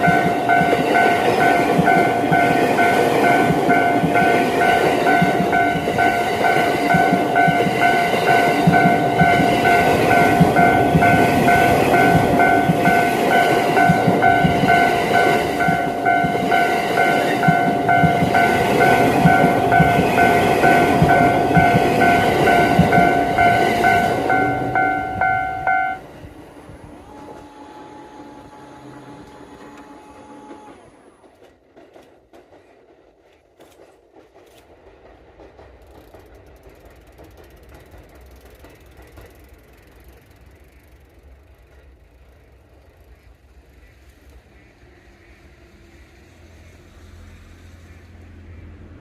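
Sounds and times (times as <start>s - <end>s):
train horn: 0.0s - 31.0s
passing train rumble: 0.0s - 49.0s.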